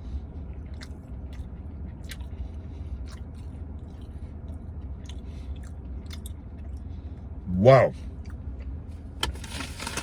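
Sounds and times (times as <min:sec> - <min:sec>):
steady low hum: 0:00.0 - 0:10.0
person chewing food: 0:00.2 - 0:07.4.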